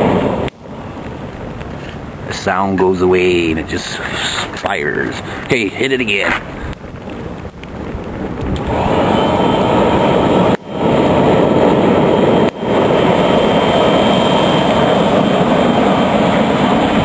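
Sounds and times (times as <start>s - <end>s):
faint high whine: 0.0s - 6.7s, 8.3s - 17.0s
forced-draft fire roaring: 0.0s - 17.0s.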